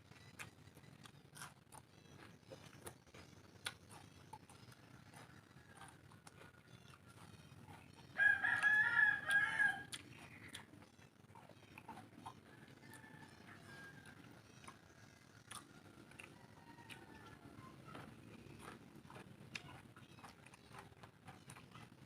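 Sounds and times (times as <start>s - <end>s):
rooster crowing: 8.2s - 10.0s, 12.5s - 14.4s, 15.8s - 18.1s.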